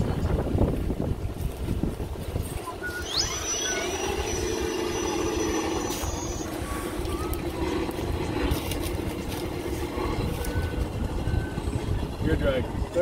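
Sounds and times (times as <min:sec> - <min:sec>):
wind noise on microphone: 0:00.0 - 0:13.0
electric motor whining: 0:02.8 - 0:12.0.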